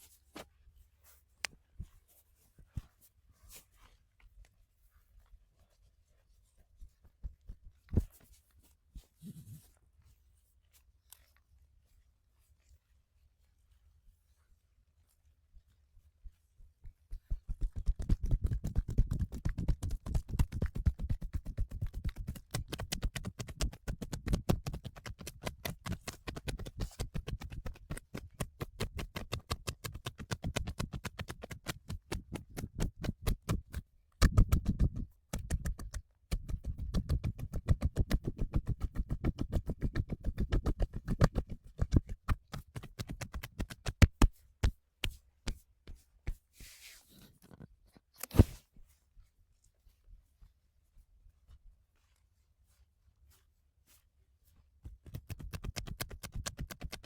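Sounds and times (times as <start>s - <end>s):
hands slapping a body: 16.8s - 46.8s, 54.9s - 57.0s.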